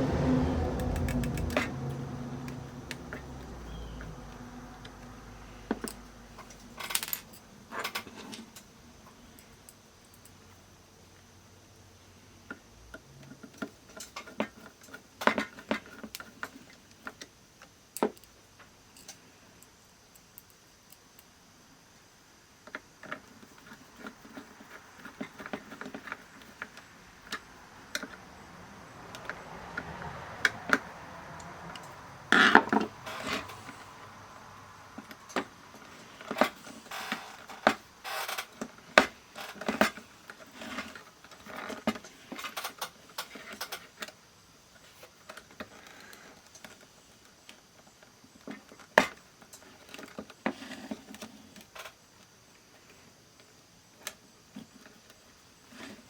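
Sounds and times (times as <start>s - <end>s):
tools clicking and rattling on workbench: 5.7s - 8.7s.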